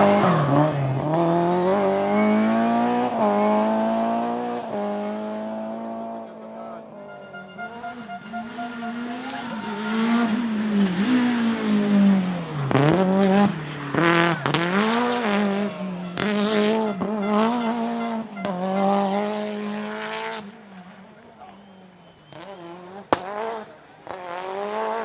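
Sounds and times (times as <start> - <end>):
rally car engine at high revs: 0.0 - 25.0.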